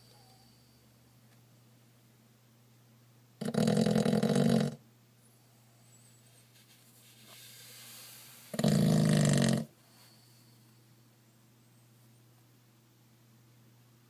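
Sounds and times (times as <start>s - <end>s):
quiet breath: 0.0s - 1.2s, 5.2s - 8.6s, 9.7s - 12.0s
dog snoring: 3.4s - 4.8s, 7.4s - 10.3s.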